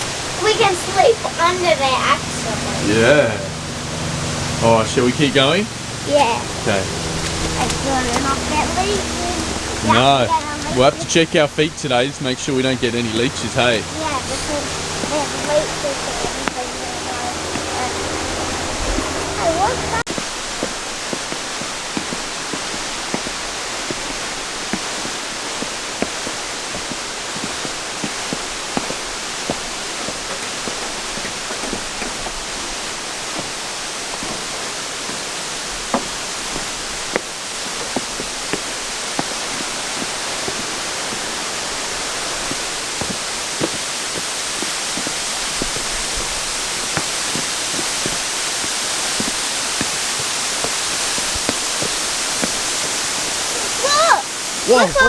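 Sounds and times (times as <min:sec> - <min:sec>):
falling water rushing: 0:00.0 - 0:55.0.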